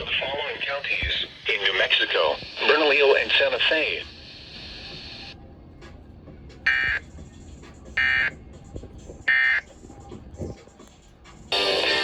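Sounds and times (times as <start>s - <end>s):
buzzy two-tone modem bursts: 0.4s - 5.4s, 11.5s - 12.0s.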